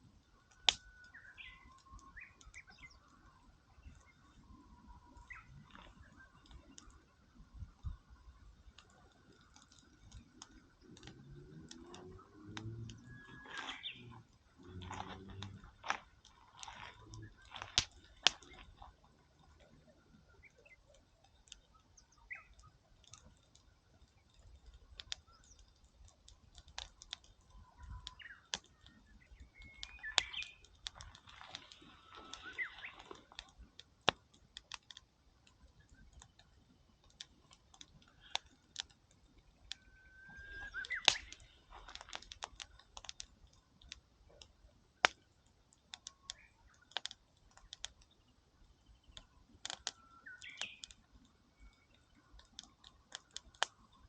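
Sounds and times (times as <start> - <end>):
campfire crackling and popping: 0.0 - 54.0
birds calling: 12.8 - 18.9, 27.6 - 33.4, 39.7 - 42.4, 48.8 - 51.0.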